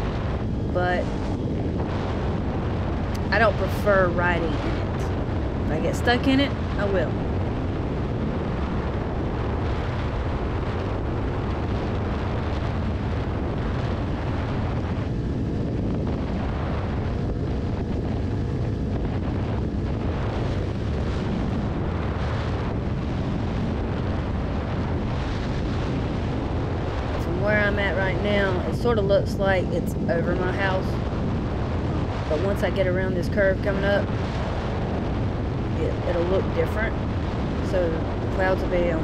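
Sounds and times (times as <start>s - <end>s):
wind buffeting microphone: 0.0s - 39.0s.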